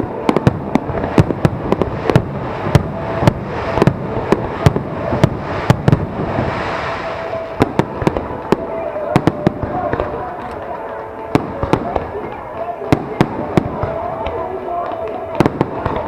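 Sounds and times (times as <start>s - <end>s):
firework hissing: 0.0s - 8.7s
fireworks rumble and crackle: 0.0s - 16.0s.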